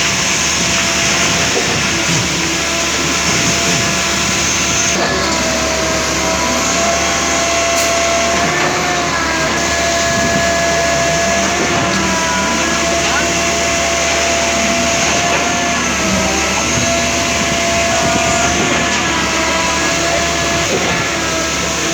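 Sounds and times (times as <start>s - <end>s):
construction machinery running: 0.0s - 21.9s
machine whine: 0.0s - 21.9s.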